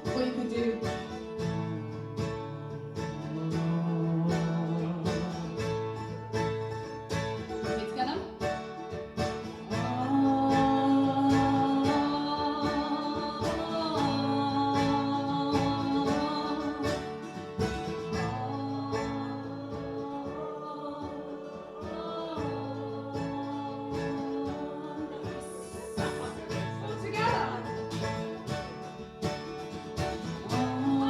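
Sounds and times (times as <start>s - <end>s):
acoustic guitar strumming: 0.0s - 31.0s
audience singing along: 9.7s - 31.0s.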